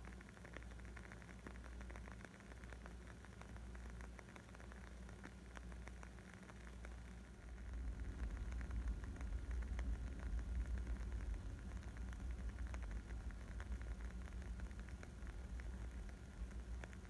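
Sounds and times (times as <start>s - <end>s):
soft hiss: 0.0s - 17.0s
wood fire crackling: 0.2s - 17.0s
steady low rumble: 6.9s - 17.0s.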